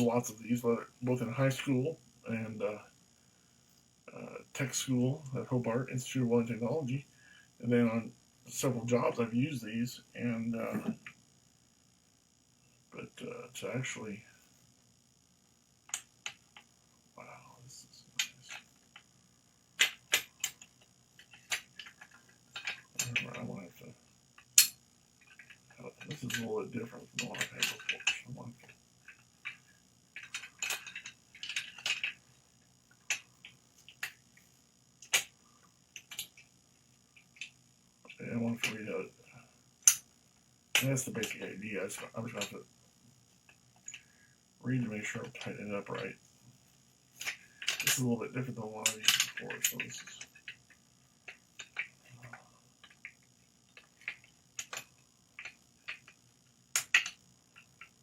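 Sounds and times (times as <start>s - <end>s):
plastic and metal parts clicking: 51.3s - 56.2s, 56.8s - 57.9s.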